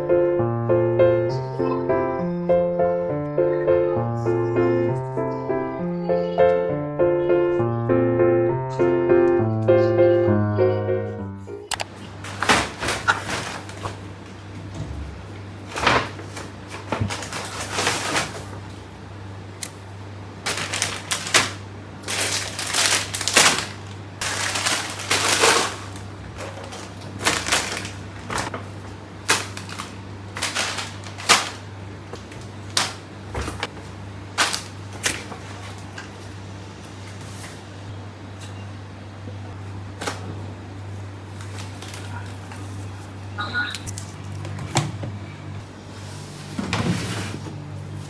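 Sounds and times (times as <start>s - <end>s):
steady low hum: 0.0s - 48.0s
cupboard opening and closing: 11.7s - 19.1s, 20.4s - 36.2s, 44.1s - 48.0s.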